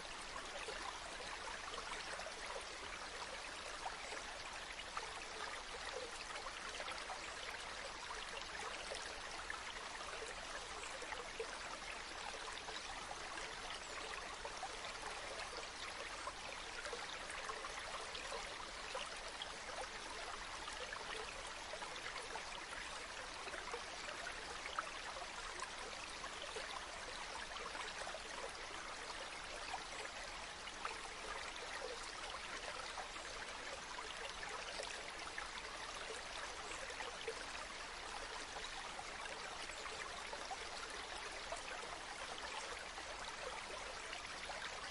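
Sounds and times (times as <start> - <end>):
stream water flowing: 0.0 - 44.9.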